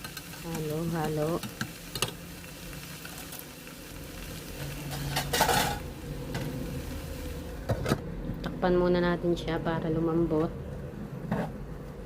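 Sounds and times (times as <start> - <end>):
vegetables sizzling in a pan: 0.0 - 7.7
spatula scraping a pan: 4.6 - 5.8.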